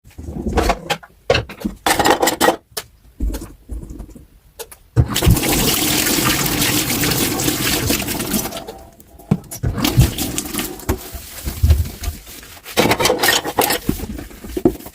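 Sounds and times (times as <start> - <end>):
dishes clattering in a sink: 0.8 - 2.6, 12.8 - 14.0
water running into a sink: 5.0 - 8.9, 9.7 - 11.3.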